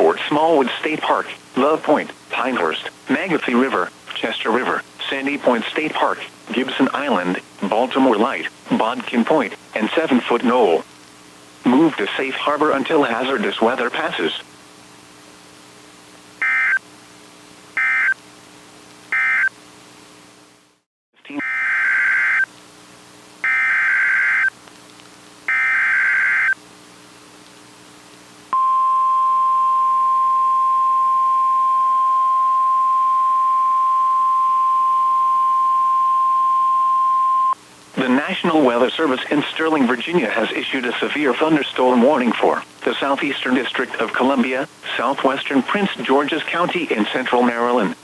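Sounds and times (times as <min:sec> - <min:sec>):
single-pitched warning alarm tone: 0:17.8 - 0:18.2, 0:19.1 - 0:19.5, 0:23.4 - 0:24.5, 0:25.5 - 0:26.6, 0:28.6 - 0:37.6.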